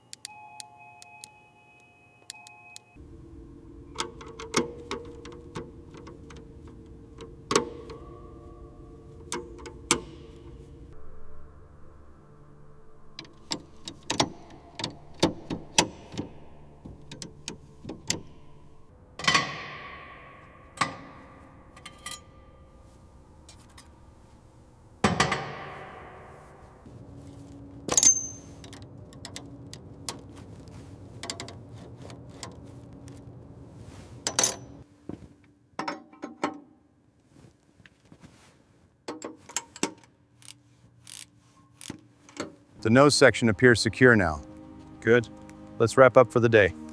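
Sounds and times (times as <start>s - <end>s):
metal tools clicking and tapping: 3.9s - 8.3s, 9.2s - 10.6s, 13.2s - 19.6s, 20.8s - 22.5s
ringing metal clangs: 3.9s - 11.2s, 13.0s - 24.0s, 25.0s - 26.9s, 27.9s - 28.6s.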